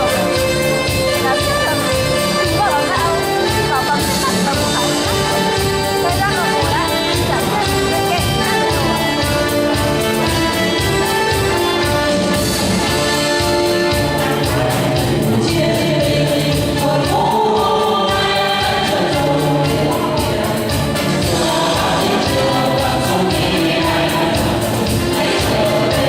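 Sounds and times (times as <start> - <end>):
group singing a march: 0.0 - 26.0
instrumental accompaniment: 0.0 - 26.0.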